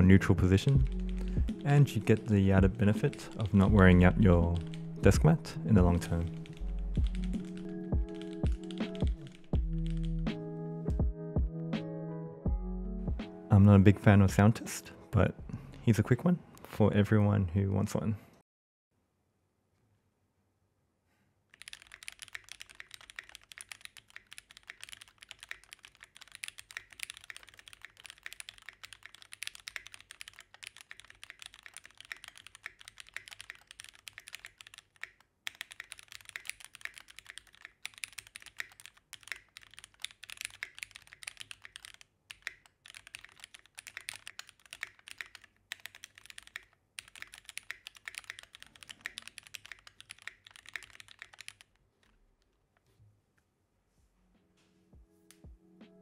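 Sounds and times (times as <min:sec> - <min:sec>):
mechanical keyboard typing: 0:00.5 - 0:10.2, 0:21.5 - 0:52.1.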